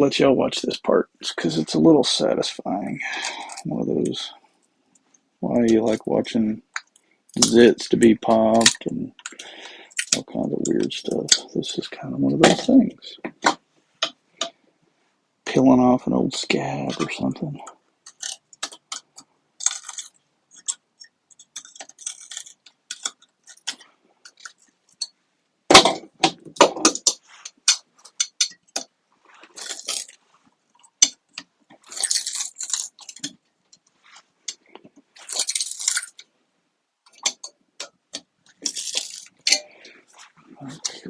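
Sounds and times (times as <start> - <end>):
glue crackling as peeled off: 18.0 - 25.0, 27.0 - 36.3.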